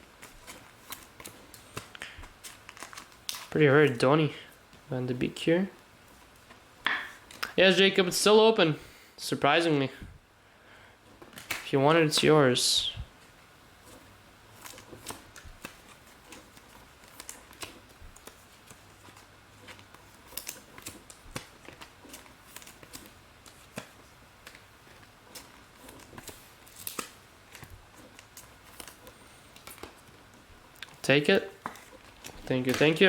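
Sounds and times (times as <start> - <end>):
handling rustles: 13.0 - 33.0.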